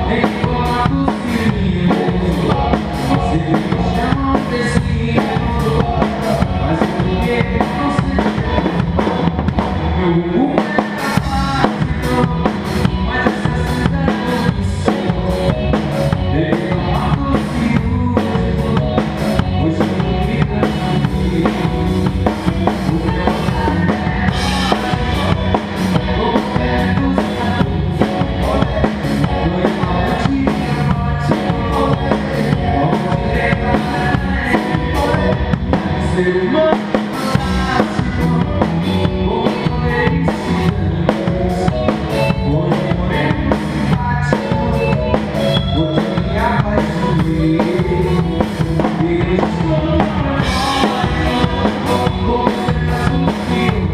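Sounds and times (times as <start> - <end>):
drum kit playing a beat: 0.0 - 53.9
pop-rock backing track: 0.0 - 53.9.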